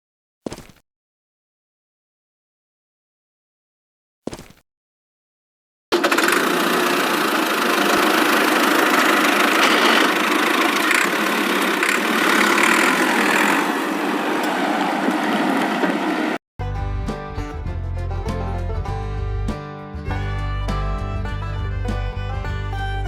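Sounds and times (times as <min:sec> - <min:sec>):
small engine running: 0:05.9 - 0:16.4.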